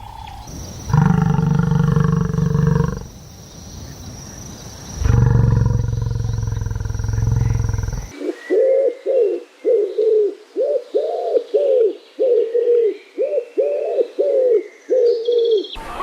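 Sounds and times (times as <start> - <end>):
dove cooing: 5.1 - 15.7.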